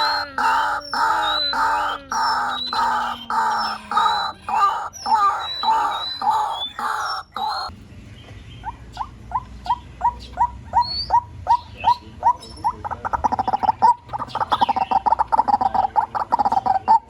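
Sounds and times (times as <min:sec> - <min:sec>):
waterhen calling: 0:00.0 - 0:07.7, 0:08.6 - 0:17.0.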